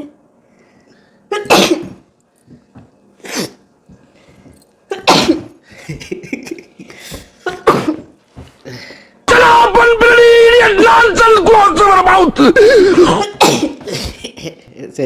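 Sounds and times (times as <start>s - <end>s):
person sneezing hard: 1.3s - 2.0s, 3.2s - 3.6s, 4.9s - 5.6s, 7.2s - 8.1s, 12.4s - 14.4s.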